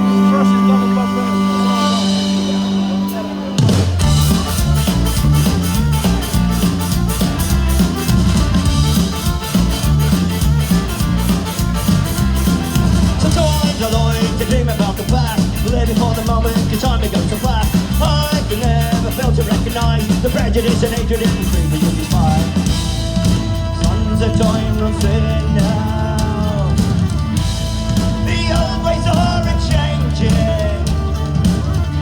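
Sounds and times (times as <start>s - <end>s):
sustained fiddle note: 0.0s - 14.5s, 22.1s - 32.0s
band playing fast beat: 0.0s - 32.0s.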